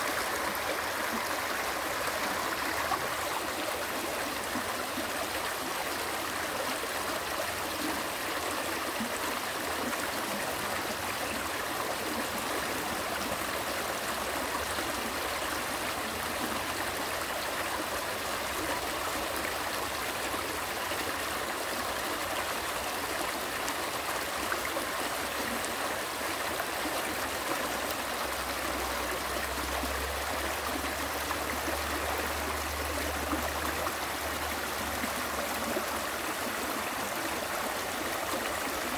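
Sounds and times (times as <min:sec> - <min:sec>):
stream water rushing: 0:00.0 - 0:38.9.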